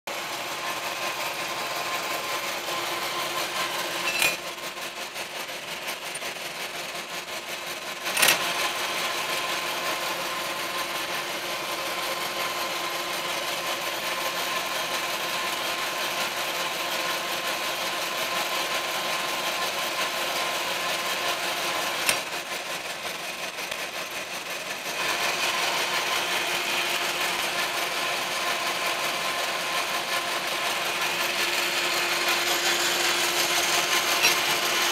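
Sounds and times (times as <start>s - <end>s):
grinder running: 0.1s - 34.9s.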